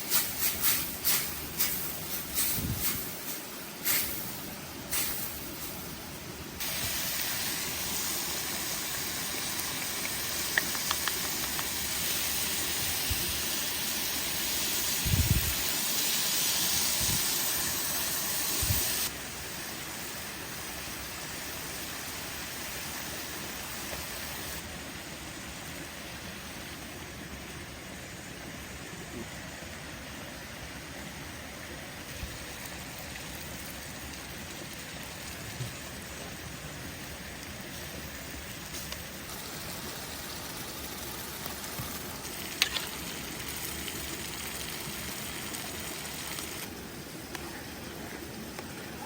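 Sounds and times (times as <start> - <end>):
food sizzling in a pan: 6.6 - 24.7, 37.4 - 47.6.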